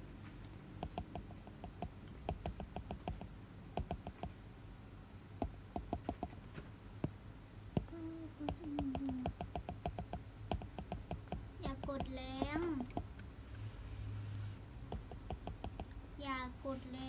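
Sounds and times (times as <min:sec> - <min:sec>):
fingers tapping on touchscreen: 0:00.8 - 0:04.4, 0:05.4 - 0:06.4, 0:07.0 - 0:13.3, 0:14.8 - 0:16.0.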